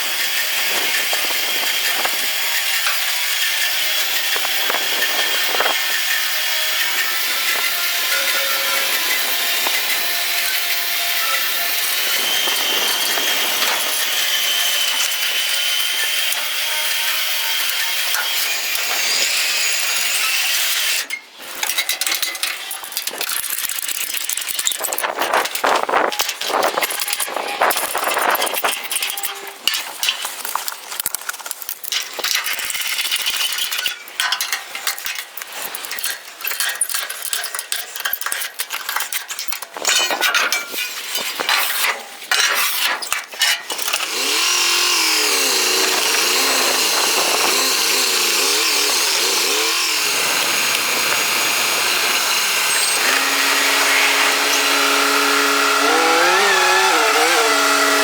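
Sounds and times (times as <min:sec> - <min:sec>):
power tool running: 0:00.0 - 0:21.0, 0:43.7 - 0:58.0
scraping and rasping: 0:39.8 - 0:58.0.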